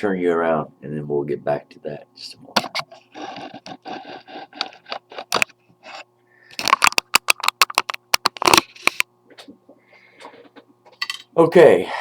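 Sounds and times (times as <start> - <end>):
sharp clicks and knocks: 6.6 - 9.5.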